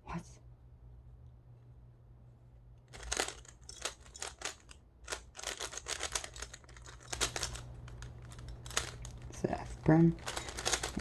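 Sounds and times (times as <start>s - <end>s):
plastic puzzle cube clicking: 2.9s - 9.3s, 10.2s - 11.0s.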